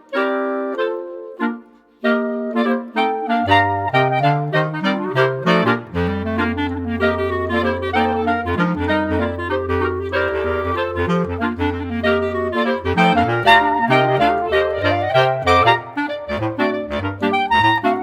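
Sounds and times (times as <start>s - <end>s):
woodwind melody: 0.0s - 18.0s.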